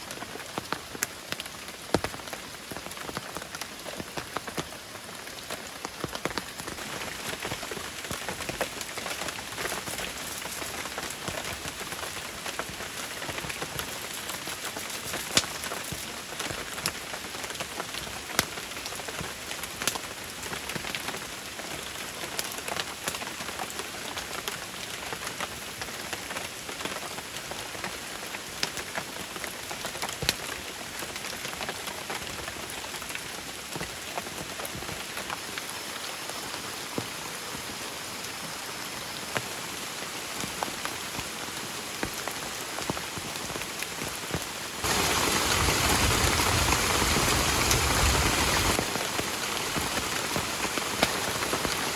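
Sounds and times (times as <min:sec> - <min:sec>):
rain falling: 0:00.0 - 0:51.9
raindrops ticking on surface: 0:00.0 - 0:51.9.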